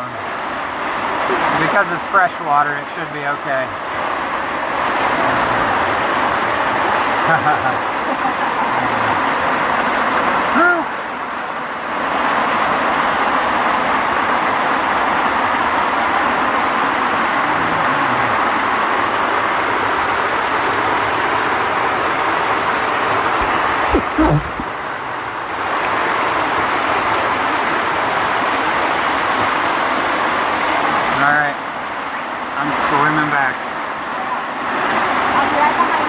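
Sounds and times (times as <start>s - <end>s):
waterfall rushing: 0.0s - 36.0s
low knocks: 23.4s - 24.7s.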